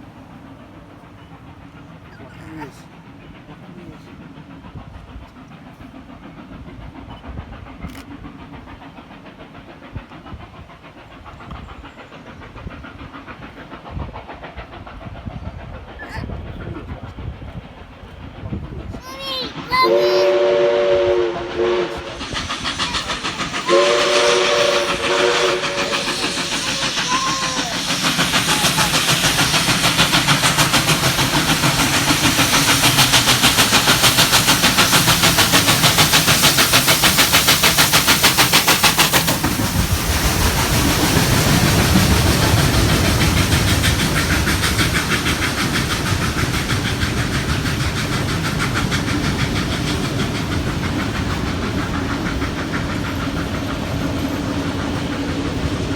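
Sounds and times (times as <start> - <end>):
steam hiss: 0.0 - 55.9
steam locomotive chuffing: 0.0 - 55.9
train whistle chord blast: 19.8 - 22.2, 23.6 - 26.1.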